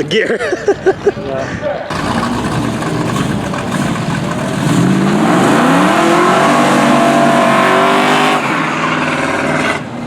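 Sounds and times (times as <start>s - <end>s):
racing cars accelerating hard: 1.9s - 9.9s.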